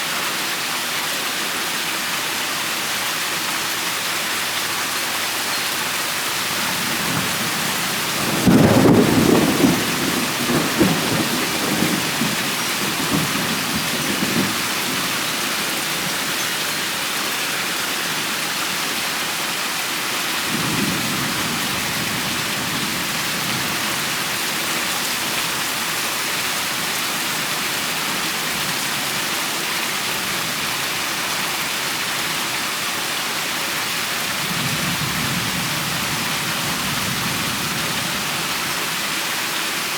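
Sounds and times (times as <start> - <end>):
steady rain falling: 0.0 - 39.9
thunder rumbling: 6.3 - 16.6.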